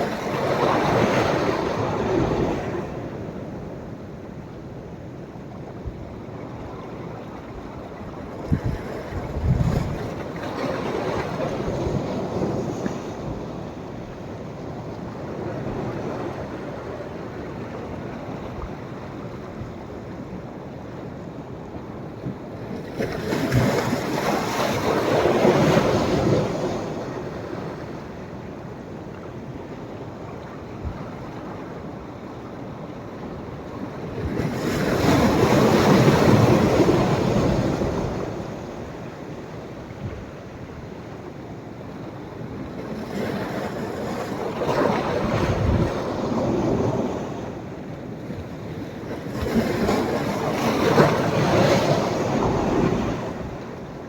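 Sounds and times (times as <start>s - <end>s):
waves breaking on beach: 0.0s - 4.0s, 22.6s - 28.4s, 32.9s - 54.0s.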